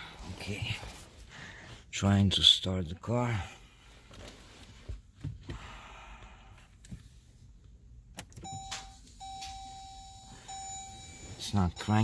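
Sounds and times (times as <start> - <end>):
high electronic warning tone: 8.5 - 12.0.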